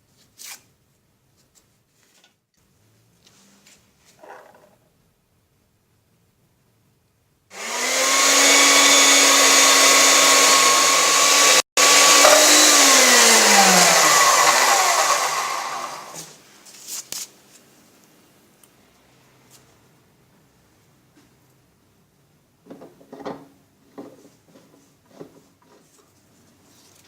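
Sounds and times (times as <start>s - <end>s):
electric power tool motor: 7.5s - 16.2s.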